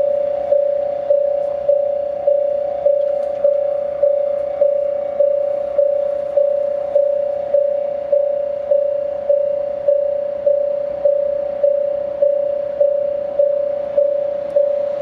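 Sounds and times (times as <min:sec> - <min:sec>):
crossing alarm electronic bell: 0:00.0 - 0:15.0.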